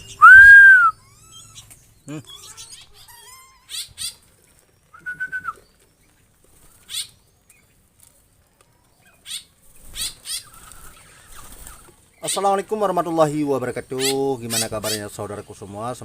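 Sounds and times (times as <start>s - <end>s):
birds high-pitched calls: 0.0s - 16.0s
whistled note: 0.2s - 0.9s
wings flapping: 3.8s - 8.3s, 9.6s - 12.1s.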